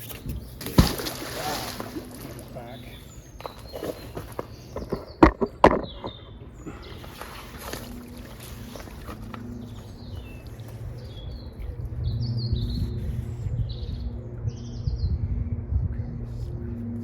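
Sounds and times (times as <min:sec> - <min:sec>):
songbird chirping: 0:00.0 - 0:15.1
low rumble: 0:07.9 - 0:17.0.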